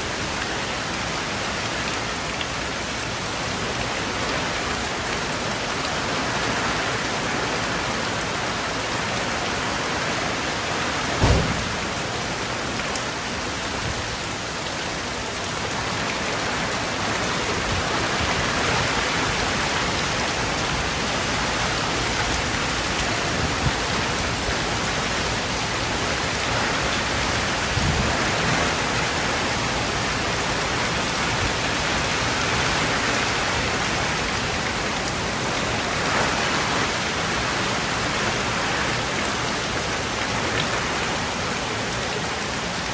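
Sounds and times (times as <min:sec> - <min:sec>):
steady rain falling: 0:00.0 - 0:42.9
short low thud: 0:11.2 - 0:12.4.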